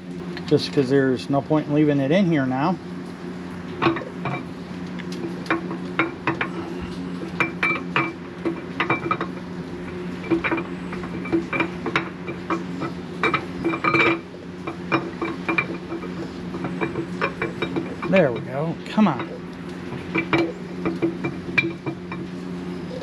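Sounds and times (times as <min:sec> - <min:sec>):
steady low hum: 0:00.0 - 0:23.0
steel engine parts clinking: 0:05.2 - 0:22.3.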